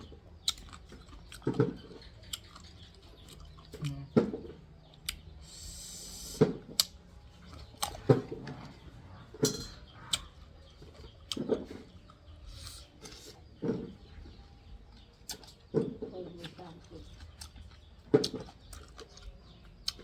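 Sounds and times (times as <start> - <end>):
person chewing: 0.0 - 9.2, 9.9 - 14.1, 15.0 - 15.7, 16.4 - 20.0.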